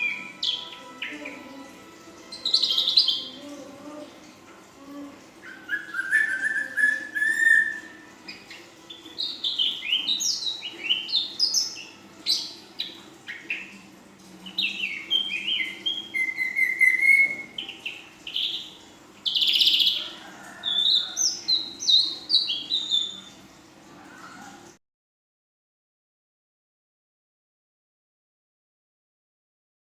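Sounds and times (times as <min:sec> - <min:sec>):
bird singing chirps and whistles: 0:05.4 - 0:13.8, 0:14.5 - 0:20.0, 0:20.7 - 0:23.4.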